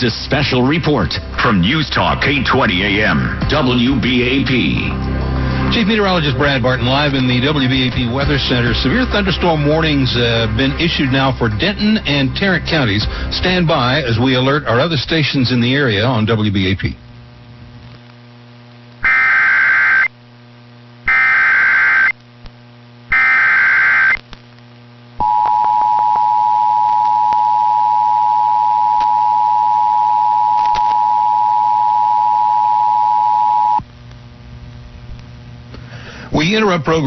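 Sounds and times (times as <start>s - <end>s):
low mains hum: 0.0s - 37.0s
warbling digital data bursts: 19.0s - 20.1s.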